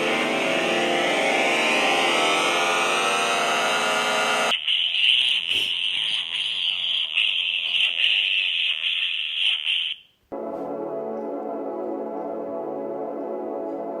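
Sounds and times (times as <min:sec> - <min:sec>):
buzzing synth tone gliding up: 0:00.0 - 0:04.5.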